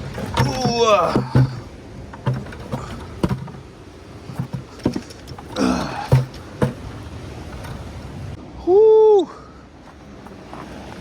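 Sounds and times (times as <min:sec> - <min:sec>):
knocks and scrapes on rocks: 0:00.0 - 0:08.0, 0:09.9 - 0:11.0
person grunting: 0:00.5 - 0:01.6, 0:05.6 - 0:06.2.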